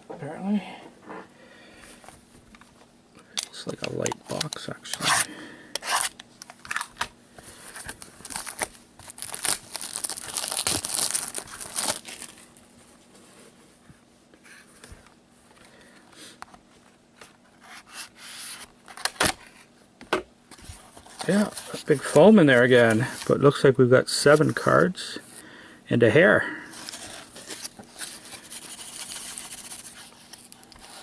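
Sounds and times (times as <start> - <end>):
packaging tearing and crinkling: 7.8 - 12.5.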